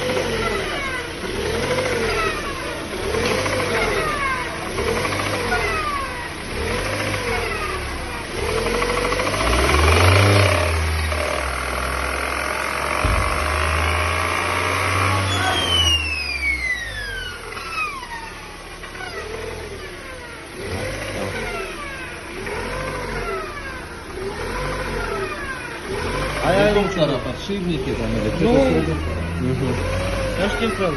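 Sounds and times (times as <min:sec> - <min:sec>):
car engine pulling under load: 0:00.0 - 0:30.9
gearbox whining: 0:00.0 - 0:30.9
whistle sweeping down in pitch: 0:15.3 - 0:17.1.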